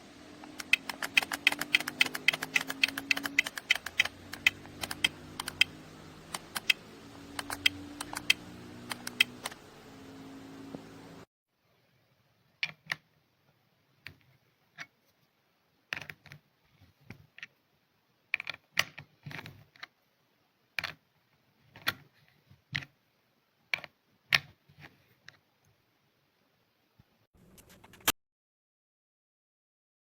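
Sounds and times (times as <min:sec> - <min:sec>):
small hard objects clicking: 0:00.6 - 0:05.7.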